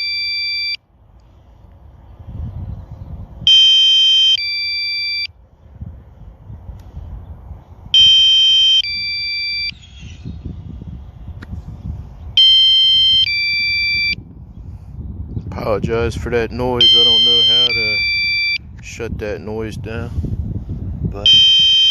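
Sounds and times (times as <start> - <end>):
two-tone electronic beep: 0.0 - 0.8, 3.5 - 5.3, 8.0 - 10.3, 12.4 - 14.2, 16.8 - 18.6, 21.3 - 21.9
low rumble: 8.8 - 12.4.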